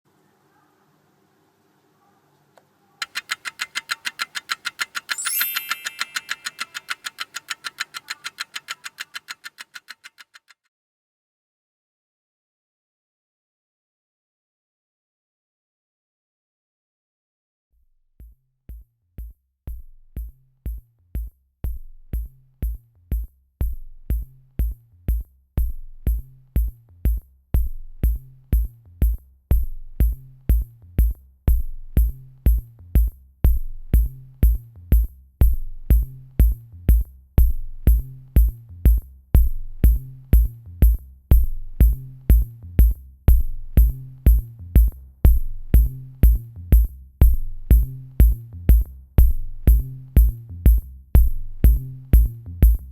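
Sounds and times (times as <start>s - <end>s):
background music with steady beat: 3.0s - 8.8s, 18.2s - 52.9s.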